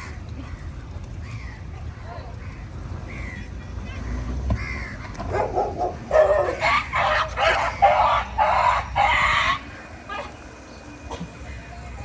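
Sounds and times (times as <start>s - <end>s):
loud animal calls: 1.2s - 10.5s.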